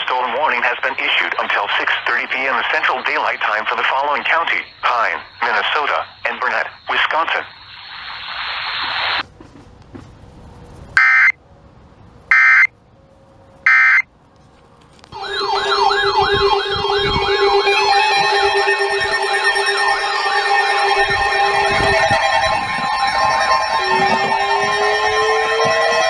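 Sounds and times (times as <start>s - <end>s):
buzzing data bursts: 11.0s - 11.4s, 15.2s - 26.0s
warbling alarm tones: 11.0s - 11.4s, 12.3s - 12.7s, 13.7s - 14.0s, 15.1s - 26.0s
steady low tone: 15.1s - 26.0s.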